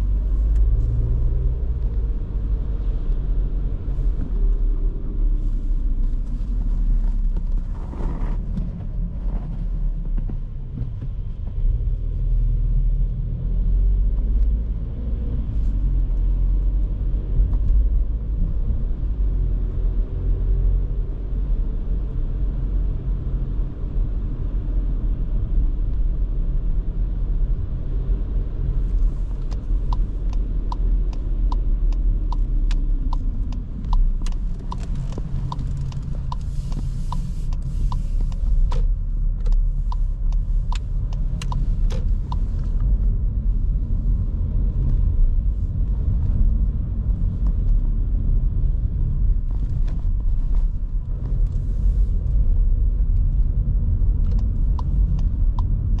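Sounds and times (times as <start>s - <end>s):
car engine and road noise: 0.0s - 56.0s
turn signal ticking: 27.9s - 47.8s, 52.2s - 56.0s.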